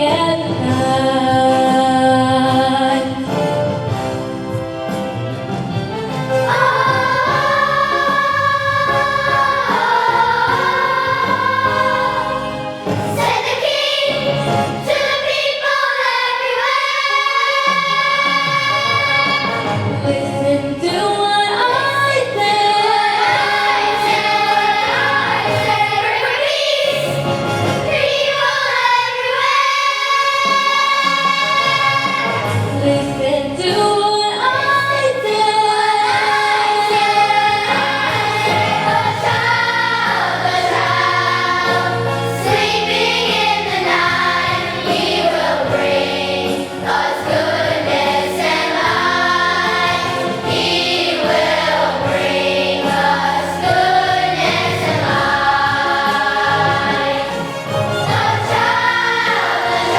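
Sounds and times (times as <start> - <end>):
low accompaniment: 0.1 - 15.4
choir singing held notes: 2.9 - 20.9, 21.5 - 33.2, 34.4 - 59.9.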